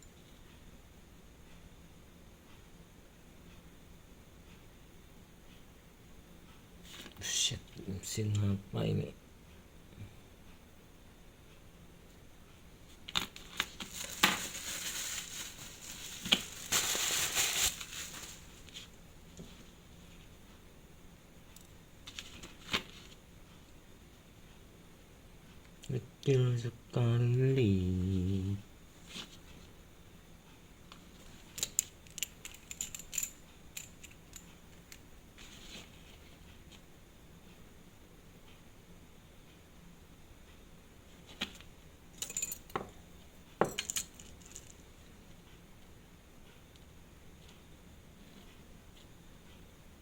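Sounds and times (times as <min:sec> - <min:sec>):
dry crinkling rustle: 0:13.0 - 0:20.2, 0:35.4 - 0:36.8
small clicks handling watch and tools: 0:30.9 - 0:35.0, 0:41.4 - 0:42.9, 0:43.6 - 0:44.8.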